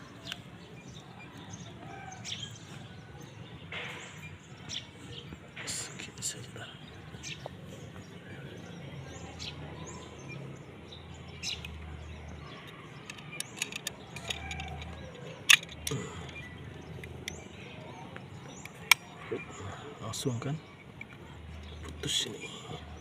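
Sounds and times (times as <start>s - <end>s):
birds chirping faintly: 0.0s - 23.0s
hand tools clicking on cable: 12.7s - 17.5s.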